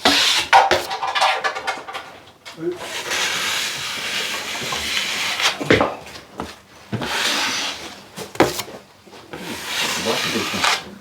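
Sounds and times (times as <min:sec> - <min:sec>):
hand tool scraping drywall: 0:00.0 - 0:01.4, 0:02.8 - 0:05.9, 0:07.0 - 0:10.9.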